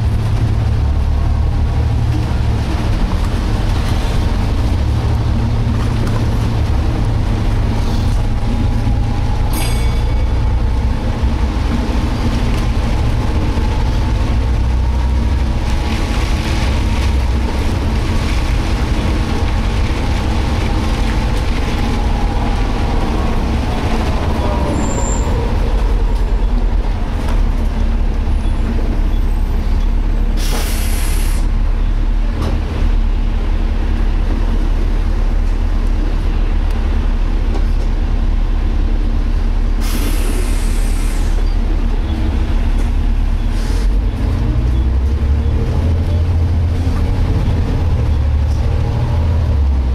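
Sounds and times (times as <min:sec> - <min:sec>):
bus driveline rumble: 0:00.0 - 0:49.9
air brake hiss: 0:30.4 - 0:31.5, 0:39.8 - 0:41.4.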